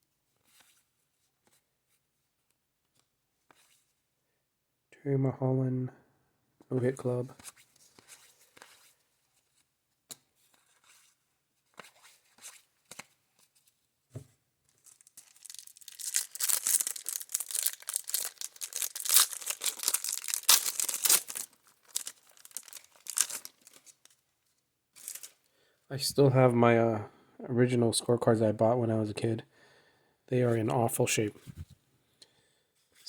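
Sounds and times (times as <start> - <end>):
card pack wrapper tearing and crinkling: 14.8 - 24.2, 25.0 - 25.4.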